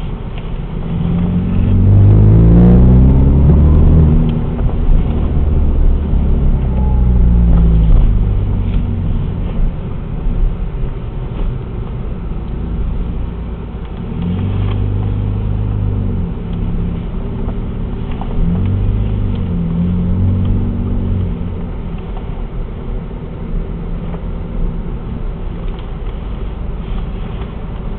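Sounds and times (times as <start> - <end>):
car engine idling and revving: 0.0 - 27.9.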